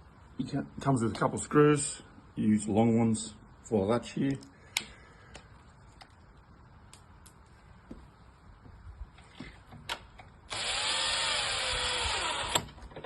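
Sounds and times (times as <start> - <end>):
power drill driving screw: 10.5 - 12.8.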